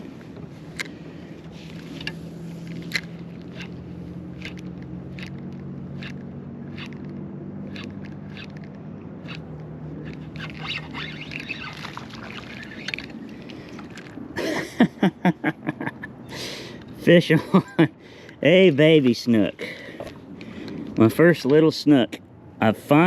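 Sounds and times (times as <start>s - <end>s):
low mechanical whir: 0.0s - 14.2s.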